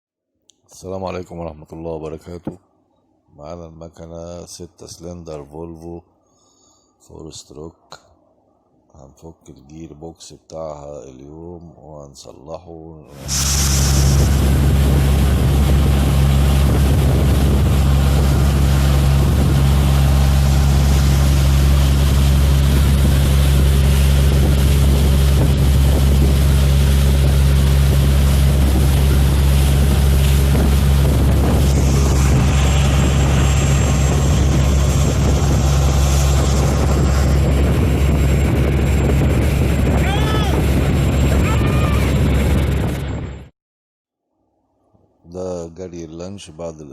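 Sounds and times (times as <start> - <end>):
water rushing past: 13.1 - 37.4
wind rushing: 13.1 - 43.4
boat engine running at speed: 13.1 - 43.5.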